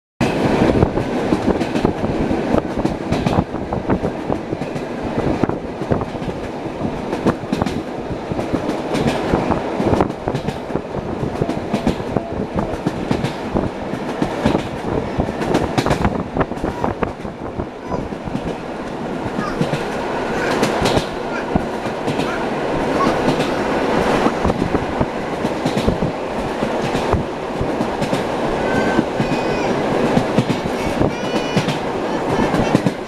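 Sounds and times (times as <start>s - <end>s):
train wheels clattering over rail joints: 0.2s - 33.0s.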